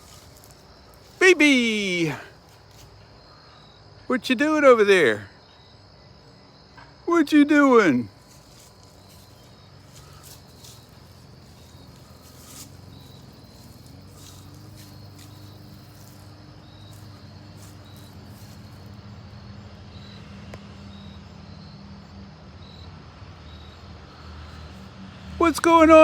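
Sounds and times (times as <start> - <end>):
squirrel alarm calls: 7.4 - 18.9.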